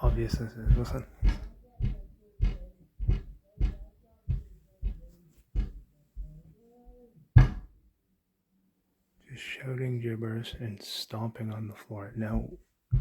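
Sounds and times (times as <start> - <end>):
dull stomping thuds on a floor: 0.0 - 6.5, 7.4 - 7.8, 12.3 - 13.0
faint muffled voice: 0.0 - 7.7.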